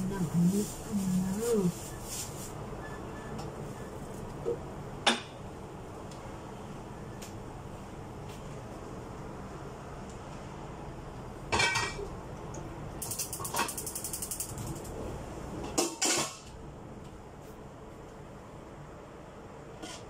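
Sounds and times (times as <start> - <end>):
kitchenware clattering: 11.5 - 12.0.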